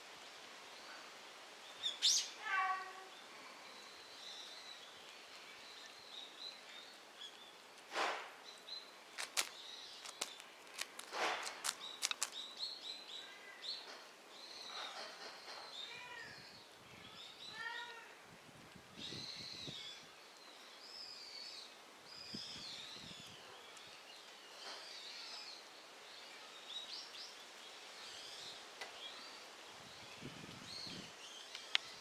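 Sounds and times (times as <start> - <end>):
small birds chirping: 8.4 - 17.9, 19.1 - 32.0
sharp clicks or rustles: 9.1 - 12.4.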